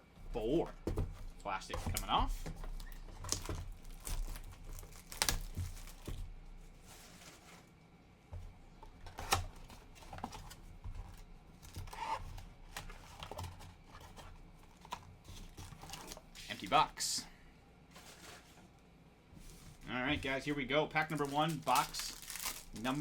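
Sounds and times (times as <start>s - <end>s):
cardboard tapping and rustling: 0.2s - 6.3s, 8.3s - 16.2s, 21.1s - 23.0s
shrink-wrap tearing and crinkling: 2.8s - 6.2s, 20.2s - 23.0s.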